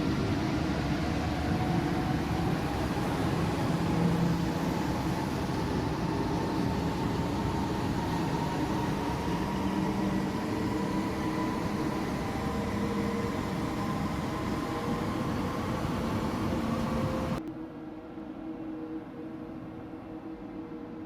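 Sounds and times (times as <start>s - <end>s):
metro train rumbling: 0.0s - 21.0s.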